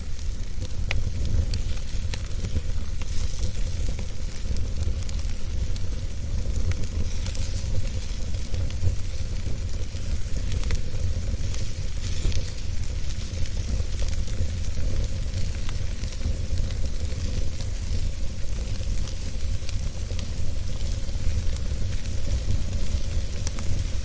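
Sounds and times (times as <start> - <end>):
fire low rumble: 0.0 - 24.0
wood fire crackling and popping: 0.0 - 24.0.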